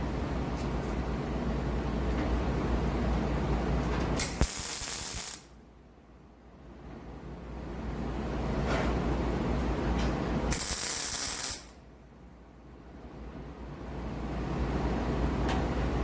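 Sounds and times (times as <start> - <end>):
welder crackling: 4.2 - 5.5, 10.5 - 11.8.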